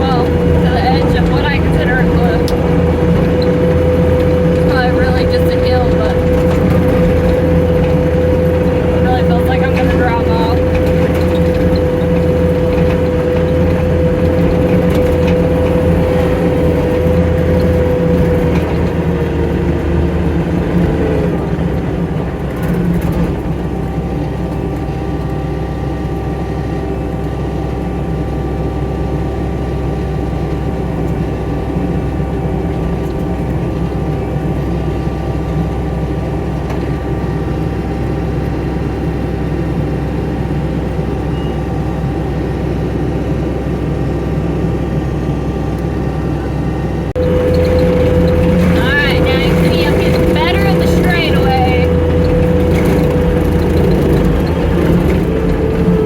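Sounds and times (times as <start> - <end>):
skid steer engine running: 0.0 - 56.0
high whine: 47.1 - 56.0.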